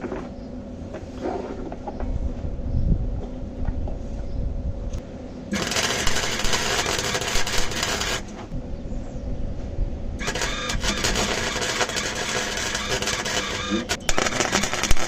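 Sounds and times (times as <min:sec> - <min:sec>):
arc welding crackle: 0:05.5 - 0:08.6, 0:10.2 - 0:15.0.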